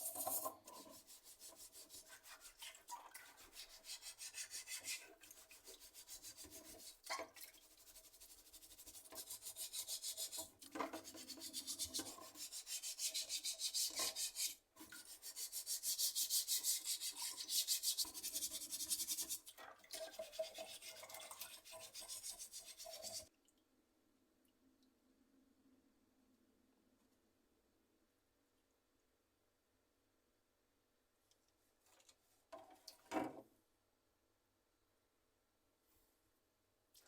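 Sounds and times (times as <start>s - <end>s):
scrubbing strokes: 0.0s - 23.3s.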